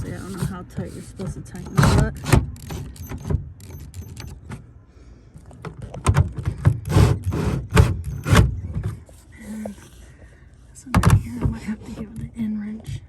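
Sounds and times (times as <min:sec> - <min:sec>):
socket ratchet clicking: 0:01.7 - 0:04.4.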